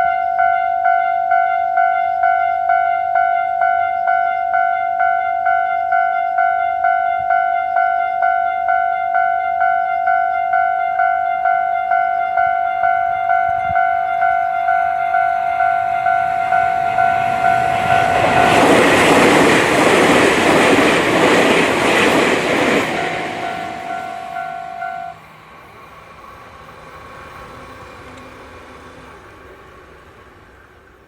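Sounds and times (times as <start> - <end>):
level crossing warning bell ringing: 0.0 - 19.6, 22.7 - 25.2
train rushing past: 13.2 - 31.0.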